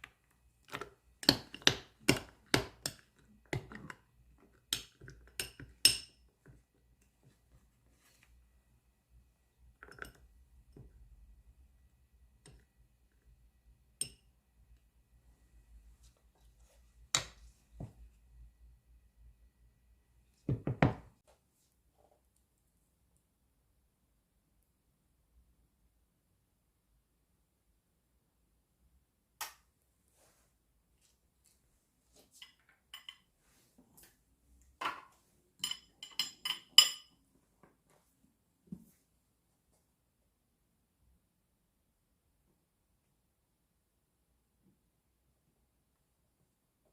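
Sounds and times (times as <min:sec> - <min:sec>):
kitchen utensils and dishes clinking: 0:32.4 - 0:33.3, 0:34.9 - 0:37.2.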